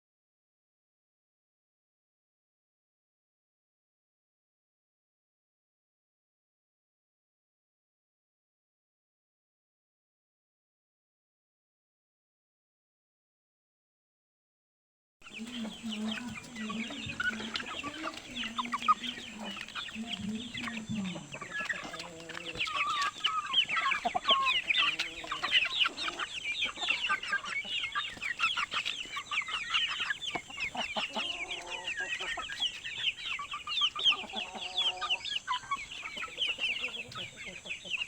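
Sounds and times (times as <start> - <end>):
chickens clucking: 15.2 - 38.0
chicks peeping: 15.2 - 38.0.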